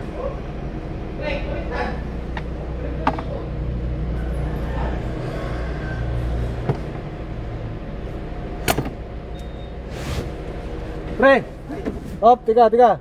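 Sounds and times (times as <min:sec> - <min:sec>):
engine humming: 0:00.0 - 0:11.8.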